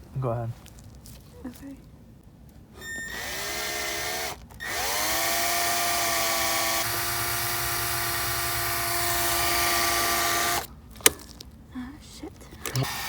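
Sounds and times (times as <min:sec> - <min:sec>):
electric drill boring: 0:02.8 - 0:11.2, 0:12.7 - 0:13.0.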